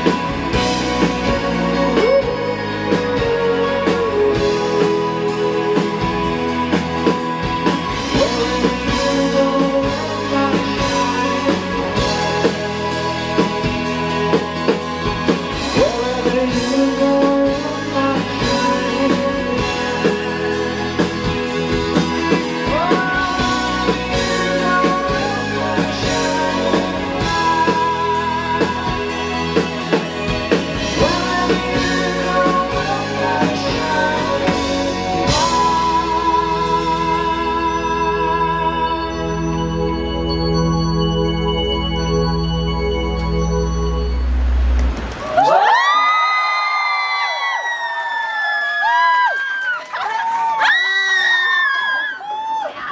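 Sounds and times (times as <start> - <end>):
man singing: 0.0 - 40.1
rock band playing: 0.0 - 46.2.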